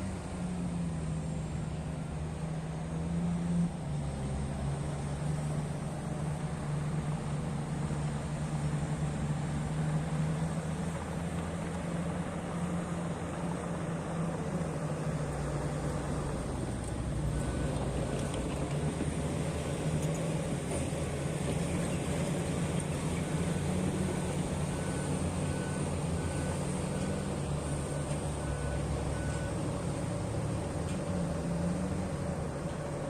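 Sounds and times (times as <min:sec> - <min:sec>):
diesel machine running: 0:00.0 - 0:33.0.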